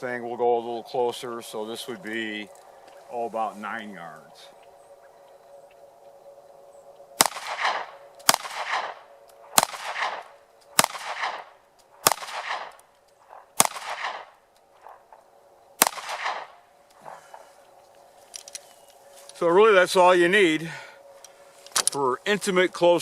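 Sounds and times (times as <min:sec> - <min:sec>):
pistol shots with echo: 0:07.2 - 0:14.4, 0:15.8 - 0:16.6.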